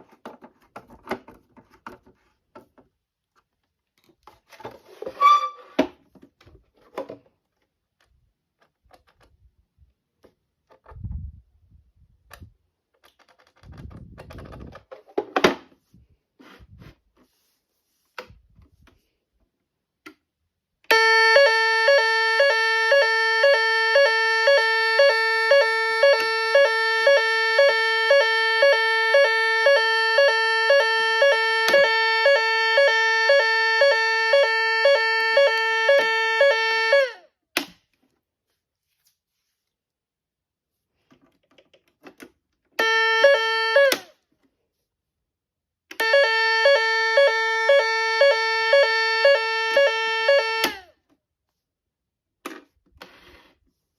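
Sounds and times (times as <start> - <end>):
pulsing fire alarm tone: 20.9 - 37.2, 42.8 - 44.0, 46.0 - 50.8.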